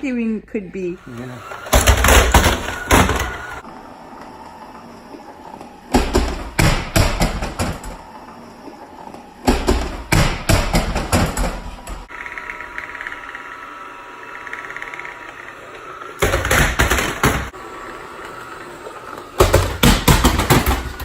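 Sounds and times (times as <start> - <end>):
robot vacuum humming: 0.7 - 6.1, 8.0 - 9.5, 12.0 - 19.8.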